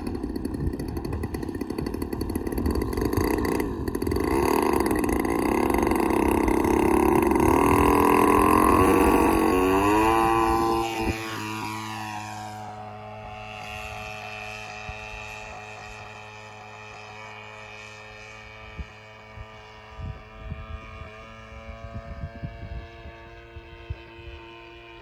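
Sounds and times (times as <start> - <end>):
wind buffeting microphone: 0.0 - 11.9, 18.7 - 24.4
model airplane engine droning: 0.0 - 25.0.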